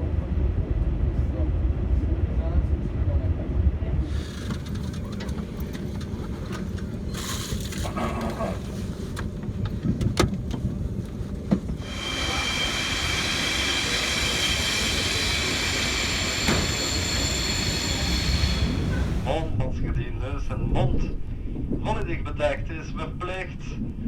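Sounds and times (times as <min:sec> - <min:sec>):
train rumbling: 0:00.0 - 0:24.0
high-pitched multi-tone whine: 0:11.8 - 0:19.4.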